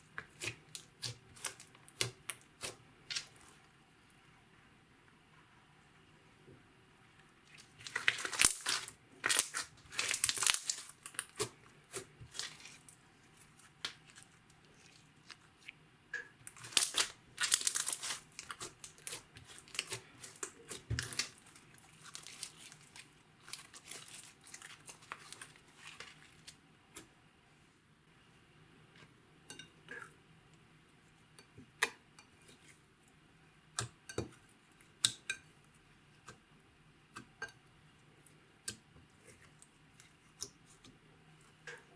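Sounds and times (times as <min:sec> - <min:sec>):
slime crackling and popping: 0:07.6 - 0:13.0, 0:16.4 - 0:26.6.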